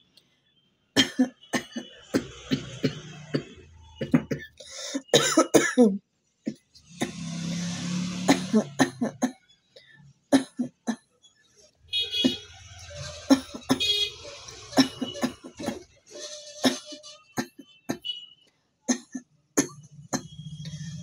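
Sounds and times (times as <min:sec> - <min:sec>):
person coughing: 0:01.0 - 0:07.2, 0:08.2 - 0:09.3, 0:10.4 - 0:11.0, 0:13.2 - 0:15.9, 0:16.6 - 0:18.1, 0:18.9 - 0:20.3.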